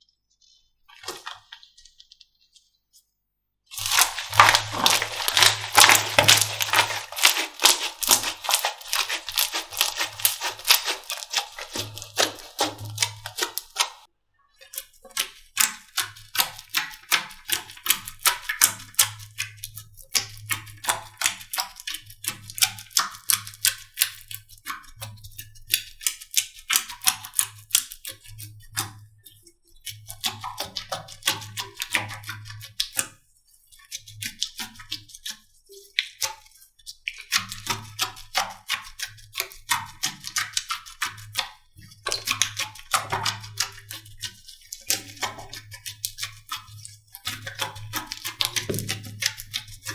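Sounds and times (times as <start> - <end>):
slime squeezed clicking and popping: 48.5 - 49.5.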